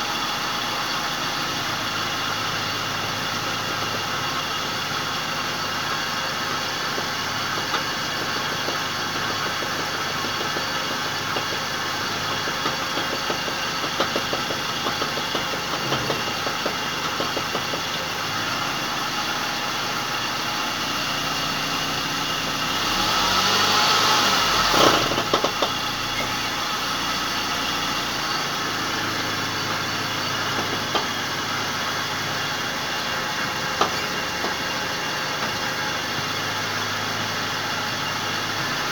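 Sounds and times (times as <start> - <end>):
car engine running: 0.0 - 38.9
sharp knocks: 7.0 - 18.2.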